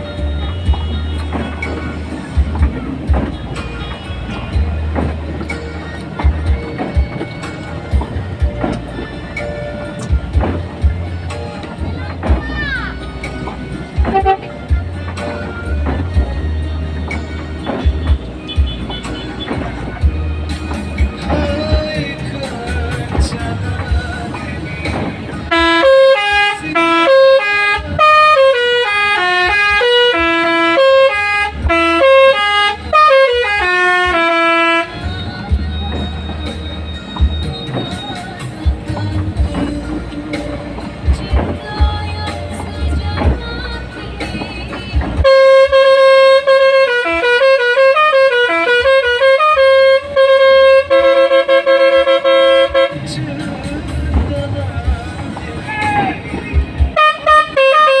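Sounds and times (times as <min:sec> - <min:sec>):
multi-tone air horn tune: 0:00.0 - 0:12.4, 0:13.0 - 0:22.4, 0:23.1 - 0:54.0, 0:55.7 - 0:58.0.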